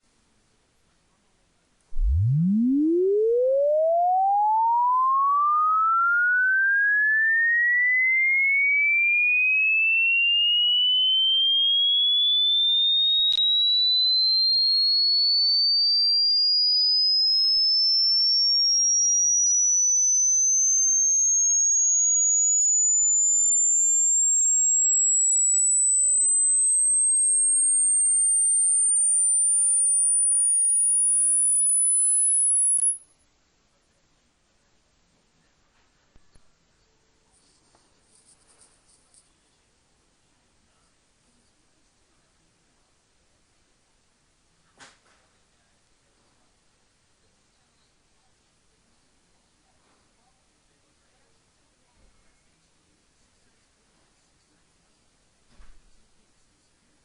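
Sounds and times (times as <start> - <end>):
sine tone sweeping upward: 1.9 - 33.0.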